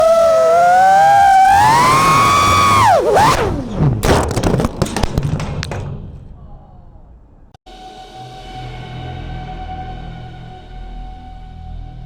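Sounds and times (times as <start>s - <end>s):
quadcopter motors whining: 0.0s - 3.8s
drone crashing clatter: 3.9s - 7.6s.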